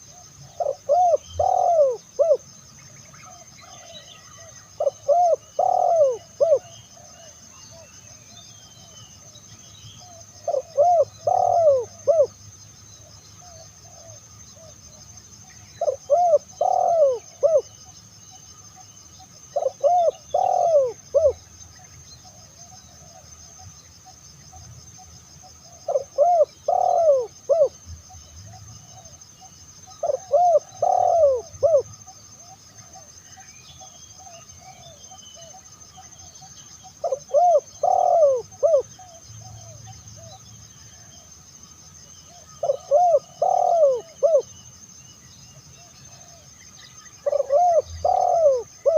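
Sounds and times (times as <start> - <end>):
dove cooing: 0.0 - 2.5, 3.6 - 7.9, 10.0 - 12.3, 15.8 - 17.7, 19.5 - 21.4, 25.7 - 27.8, 29.8 - 32.2, 37.0 - 40.4, 42.3 - 44.5, 47.2 - 48.9.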